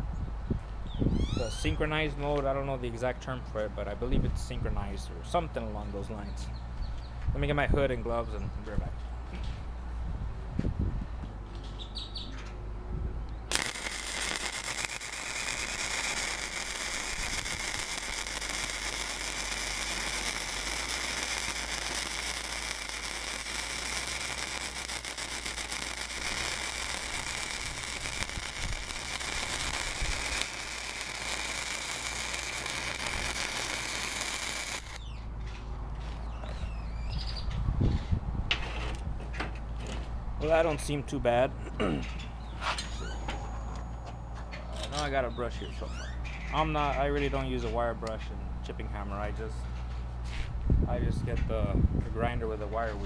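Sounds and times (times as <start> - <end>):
welding arc crackling: 13.4 - 35.1.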